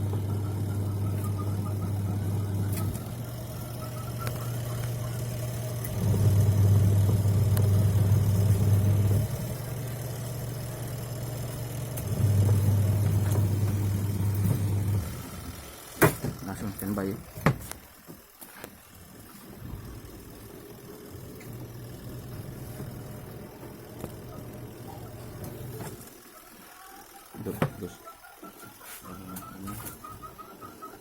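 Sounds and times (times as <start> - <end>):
washing machine motor humming: 0.0 - 31.0.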